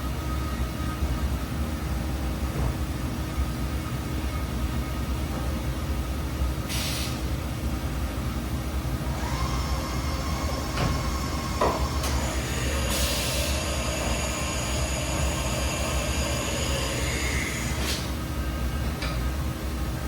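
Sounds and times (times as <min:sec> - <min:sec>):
machine shop hum: 0:00.0 - 0:20.0
motor whine: 0:09.1 - 0:17.8.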